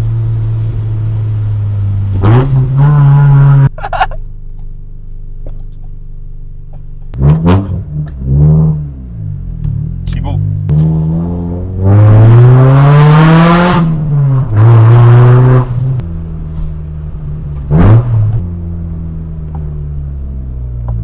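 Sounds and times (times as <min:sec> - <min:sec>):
car engine accelerating hard: 0:00.0 - 0:03.8, 0:06.6 - 0:21.0.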